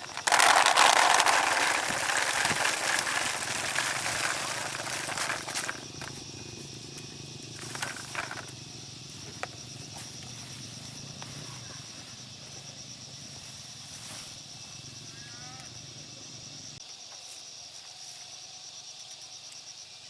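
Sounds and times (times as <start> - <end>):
rustles: 0.0 - 6.4, 7.6 - 12.6
high insect drone: 0.0 - 20.0.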